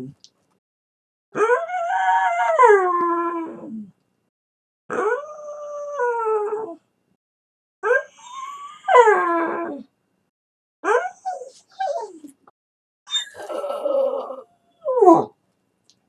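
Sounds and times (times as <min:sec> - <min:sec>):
dog howling: 0:01.4 - 0:03.8, 0:13.1 - 0:15.3.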